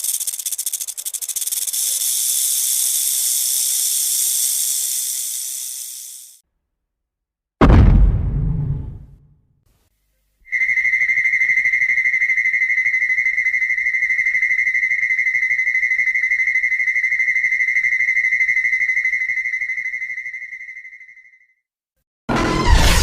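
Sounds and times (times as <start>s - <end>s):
loud blast: 7.6s - 9.2s.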